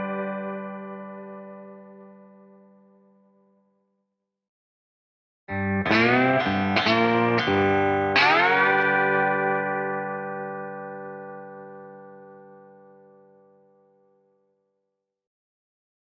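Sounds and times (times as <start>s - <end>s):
lap steel guitar slide: 5.9s - 10.0s.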